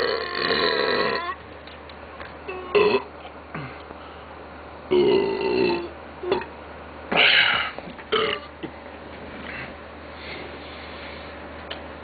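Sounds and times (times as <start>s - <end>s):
man burping: 0.0s - 1.4s, 2.5s - 3.8s, 4.9s - 6.5s, 7.1s - 8.5s.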